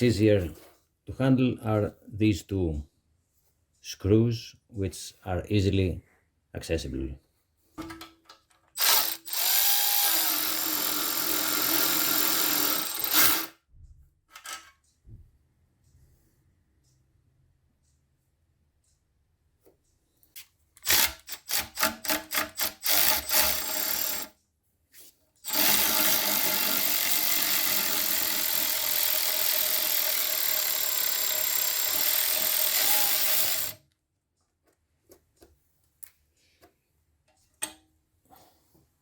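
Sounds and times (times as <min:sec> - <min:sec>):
power drill running: 0:08.8 - 0:13.5, 0:20.8 - 0:24.3, 0:25.4 - 0:33.8
ratchet clicking: 0:08.8 - 0:13.5, 0:20.8 - 0:24.3, 0:25.4 - 0:33.8.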